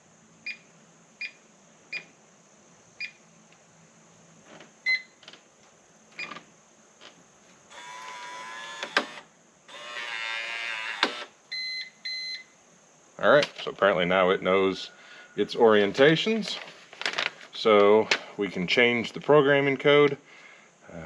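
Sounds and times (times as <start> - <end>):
lock motor driving bolt: 7.8 - 11.3.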